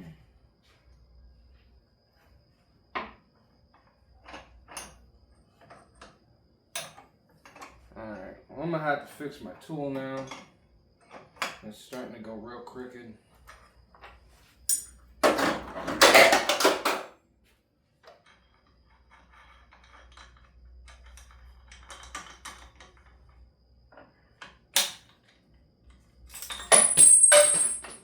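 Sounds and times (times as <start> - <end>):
metal tools clattering: 14.7 - 14.9, 26.3 - 28.0
metallic ring: 14.7 - 15.0, 26.4 - 28.0.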